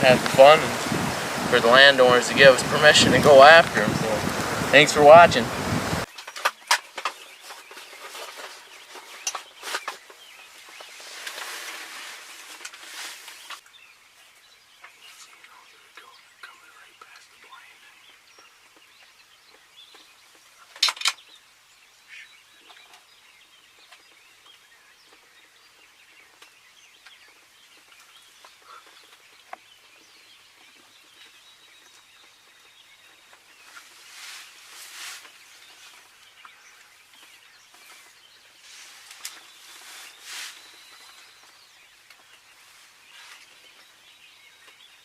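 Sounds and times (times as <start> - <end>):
rustling: 6.0 - 13.6, 33.1 - 43.9
faint bird chirps: 13.3 - 45.0.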